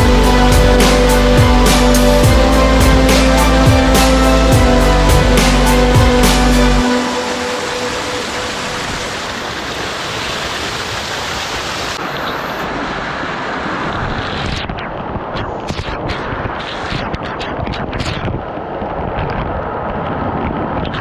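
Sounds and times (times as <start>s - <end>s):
waterfall roar: 0.0s - 14.6s.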